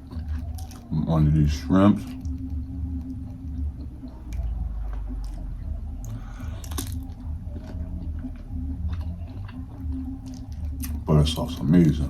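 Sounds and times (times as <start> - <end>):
chewing and biting shrimp: 0.0 - 0.9, 2.0 - 11.7
crunchy crackling: 0.0 - 12.0
steady low hum: 0.0 - 12.0.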